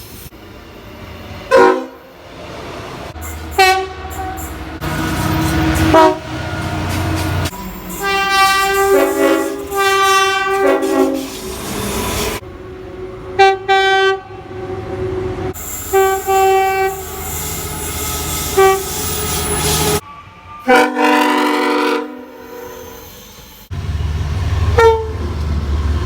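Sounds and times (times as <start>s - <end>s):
train horn blasts: 1.5s - 2.0s, 3.4s - 6.5s, 7.9s - 11.4s, 12.5s - 22.8s, 24.7s - 25.3s.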